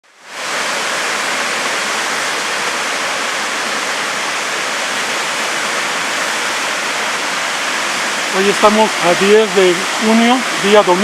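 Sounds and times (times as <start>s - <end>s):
waterfall pouring: 0.0s - 11.0s.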